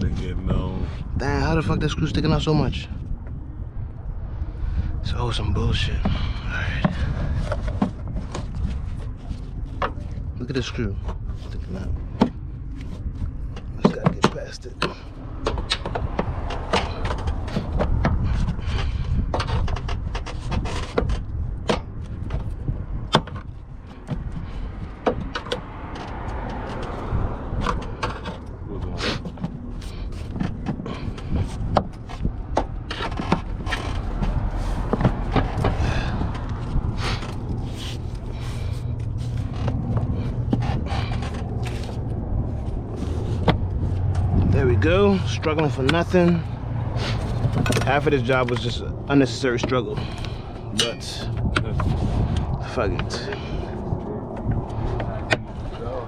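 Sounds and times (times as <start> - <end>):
steady low rumble: 0.0 - 56.0
plastic parts scraping and clicking: 12.2 - 28.5, 29.2 - 44.4, 47.1 - 48.8.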